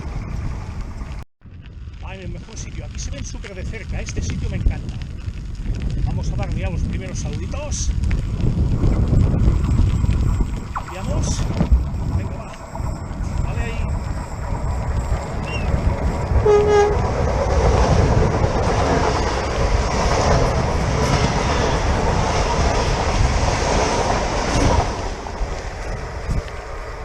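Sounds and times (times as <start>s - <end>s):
train passing with rushing wheels: 11.9s - 27.0s
train horn blast: 16.4s - 17.2s.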